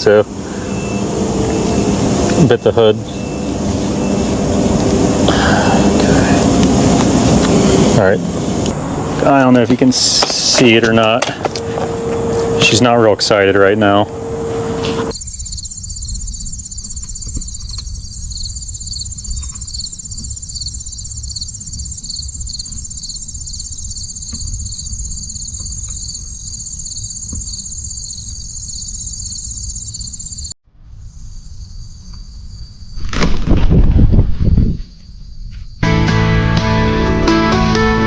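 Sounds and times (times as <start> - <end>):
insects trilling: 0.0 - 14.0, 15.1 - 33.2
low rumble of wind: 0.0 - 35.8
loud rush of sound: 3.5 - 10.6.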